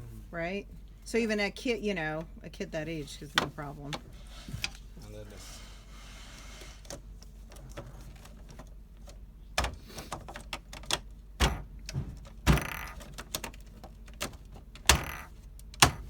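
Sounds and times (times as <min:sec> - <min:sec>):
panels knocking and clicking: 0:03.2 - 0:04.8, 0:06.8 - 0:16.0.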